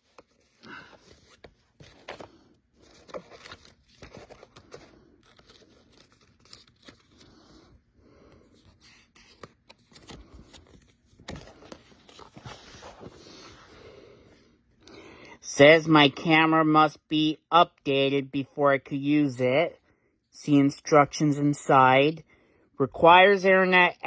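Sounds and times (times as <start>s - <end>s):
packaging rustling and crinkling: 0.0s - 7.6s, 9.1s - 13.6s.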